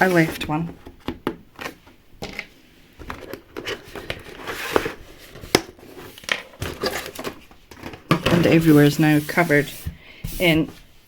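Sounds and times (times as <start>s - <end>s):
plastic parts clicking and scraping: 0.3s - 8.6s.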